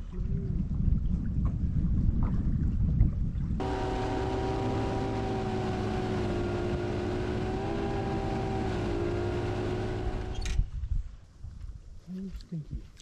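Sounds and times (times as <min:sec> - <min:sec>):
wind rumble: 0:00.0 - 0:12.0
boat motor running: 0:03.6 - 0:10.5.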